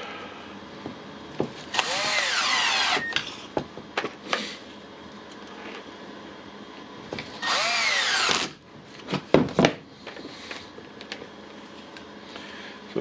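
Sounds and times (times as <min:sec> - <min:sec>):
impact wrench spinning: 0:01.7 - 0:03.2, 0:07.4 - 0:08.6.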